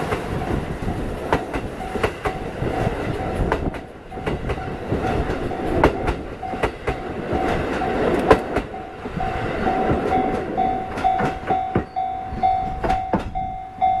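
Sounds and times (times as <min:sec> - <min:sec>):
train wheels clacking on rail joints: 0:00.0 - 0:14.0
level crossing bell ringing: 0:08.8 - 0:14.0.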